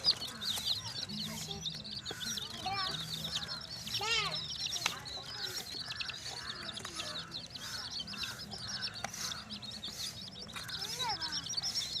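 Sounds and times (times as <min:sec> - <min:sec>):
baby chicks peeping: 0:00.0 - 0:12.0.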